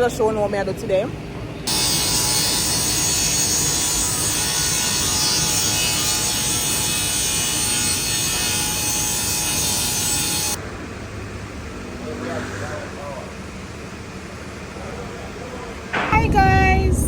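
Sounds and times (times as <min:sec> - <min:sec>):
electric saw cutting wood: 0:01.7 - 0:10.6.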